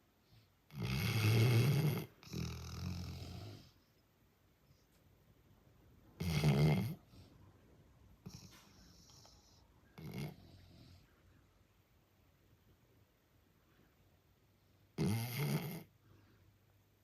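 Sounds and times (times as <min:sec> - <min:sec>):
person snoring: 0:06.2 - 0:07.0, 0:15.0 - 0:15.9.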